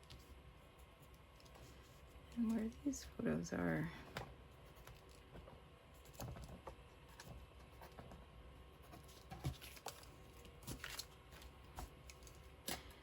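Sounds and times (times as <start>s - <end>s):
paper rustling: 8.9s - 12.4s.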